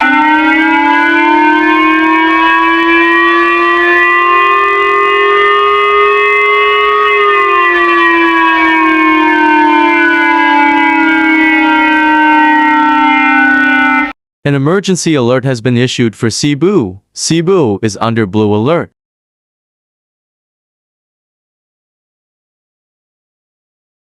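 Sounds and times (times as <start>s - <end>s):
warning siren wailing: 0.0s - 14.2s.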